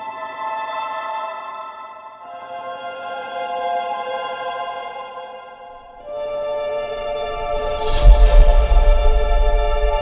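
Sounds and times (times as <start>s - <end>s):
loud deep rumble: 7.0s - 10.0s.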